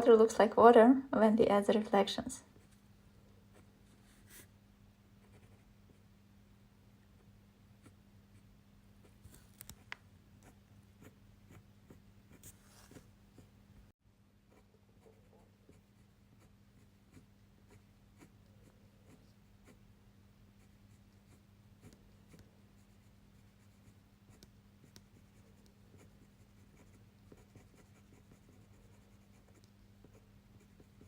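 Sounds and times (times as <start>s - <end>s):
pen scratching on paper: 5.2s - 5.7s, 9.0s - 13.0s, 14.5s - 19.8s, 20.6s - 31.0s.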